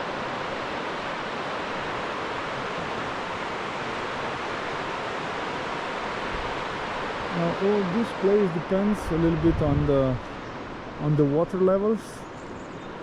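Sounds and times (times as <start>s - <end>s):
river rushing: 0.0s - 13.0s.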